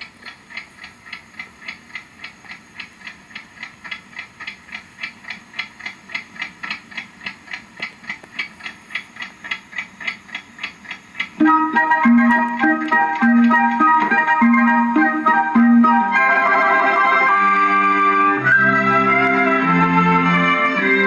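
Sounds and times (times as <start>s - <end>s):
rapid ticking: 0.2s - 16.9s.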